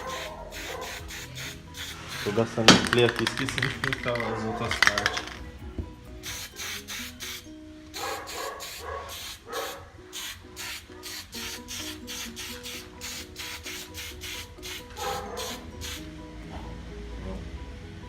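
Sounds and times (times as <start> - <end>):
spray can hissing in bursts: 0.0 - 3.3, 6.2 - 16.1
background music: 0.0 - 18.0.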